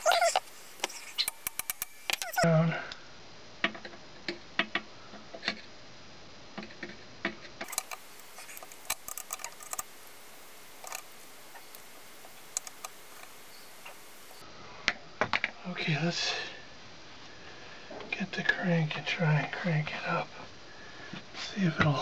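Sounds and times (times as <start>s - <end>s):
small metal parts clicking: 0.0s - 2.4s, 7.6s - 14.4s.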